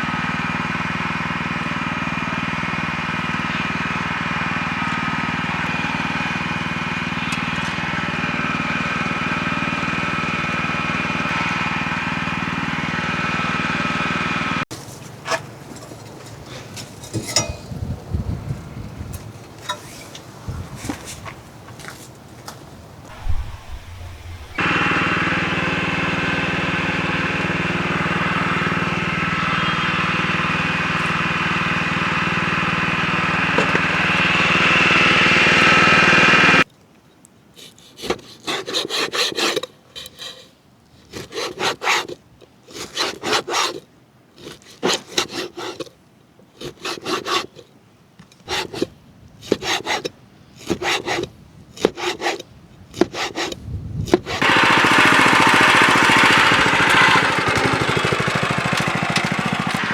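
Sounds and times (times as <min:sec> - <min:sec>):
small motor running: 0:23.1 - 0:36.6, 0:53.2 - 0:59.9
rhythmic rasping scraping strokes: 0:53.0 - 0:59.8.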